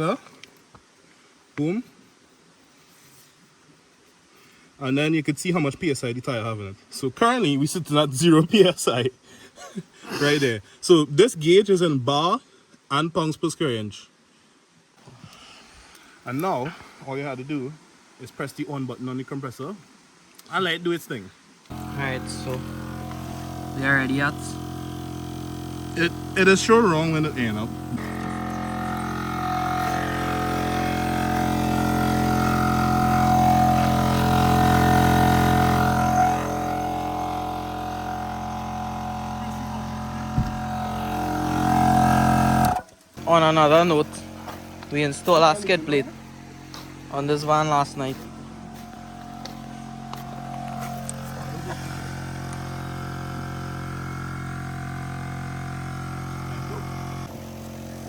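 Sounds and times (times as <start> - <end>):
air compressor humming: 21.7 - 58.0
brief thump: 40.4 - 40.6.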